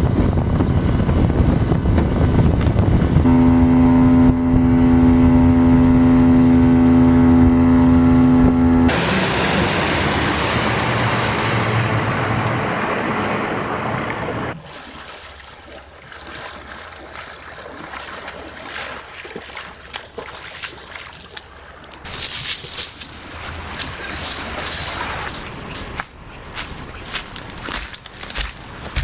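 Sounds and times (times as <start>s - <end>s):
rushing wind and water: 0.0s - 7.8s, 8.9s - 29.0s
soft water sound: 11.8s - 29.0s
light clicks and splashes: 14.7s - 29.0s.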